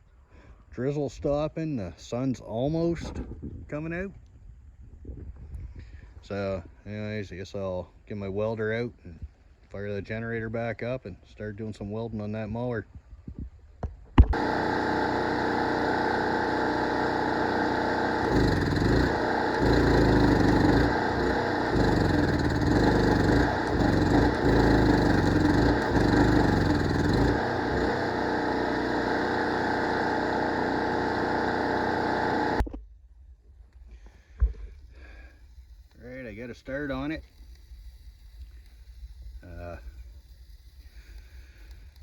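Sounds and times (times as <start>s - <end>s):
gasoline generator engine running: 14.3s - 32.6s.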